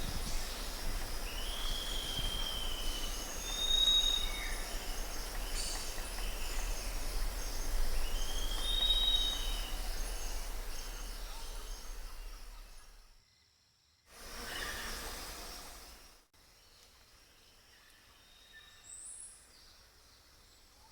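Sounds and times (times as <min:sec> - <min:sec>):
steady hiss: 0:00.0 - 0:13.0, 0:14.1 - 0:16.3.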